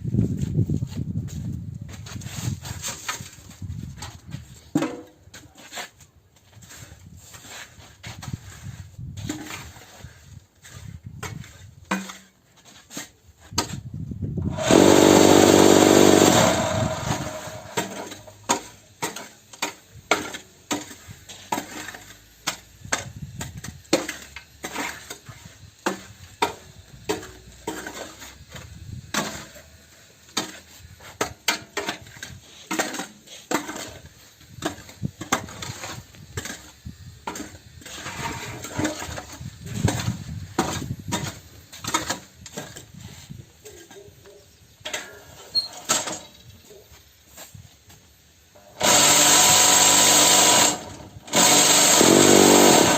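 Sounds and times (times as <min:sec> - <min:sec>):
machine vibrator running: 0:14.5 - 0:18.3.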